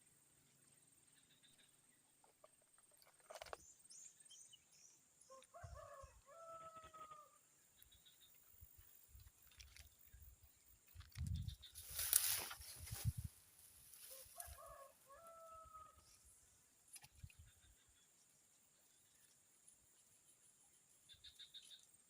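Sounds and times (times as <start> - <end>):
small birds chirping: 0.0 - 13.3, 15.3 - 22.0
rooster crowing: 5.4 - 7.4, 14.1 - 16.0.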